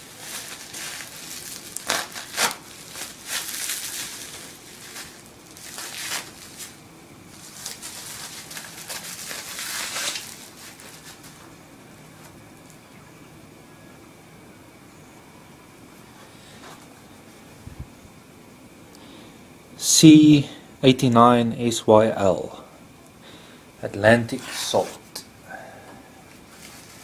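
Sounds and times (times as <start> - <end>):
wrapping crinkling and rustling: 0.0 - 12.8, 26.2 - 27.0.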